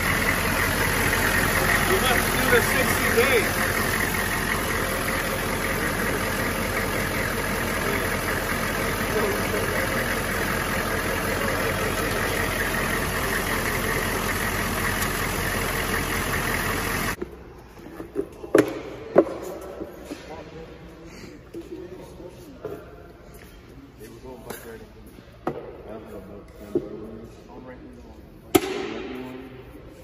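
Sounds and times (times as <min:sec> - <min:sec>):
vehicle engine idling: 0:00.0 - 0:17.2.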